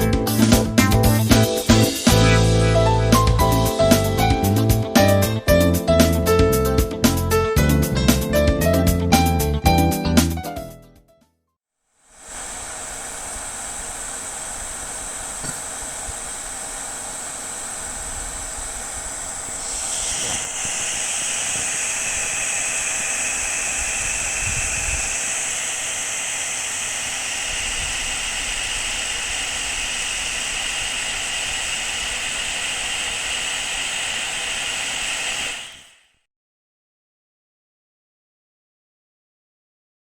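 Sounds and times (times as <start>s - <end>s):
fan heater whirring: 12.0s - 36.0s.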